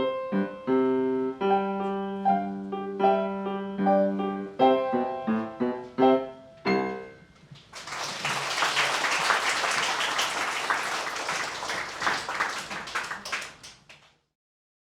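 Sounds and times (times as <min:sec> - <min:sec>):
piano chord: 0:00.0 - 0:07.4
audience applause: 0:07.6 - 0:14.1.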